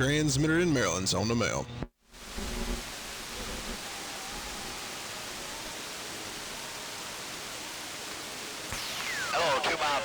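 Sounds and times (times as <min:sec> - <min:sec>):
radio static hiss: 0:02.1 - 0:10.0.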